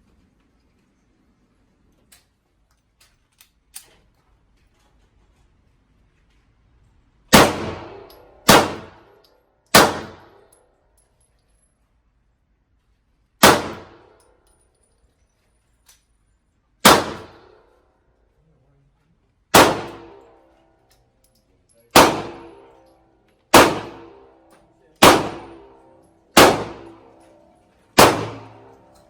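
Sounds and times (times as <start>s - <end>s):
gunshots: 7.3s - 9.1s, 9.8s - 10.4s, 13.4s - 14.1s, 16.8s - 17.6s, 19.5s - 20.2s, 22.0s - 22.7s, 23.5s - 24.3s, 25.0s - 27.2s, 27.9s - 28.9s.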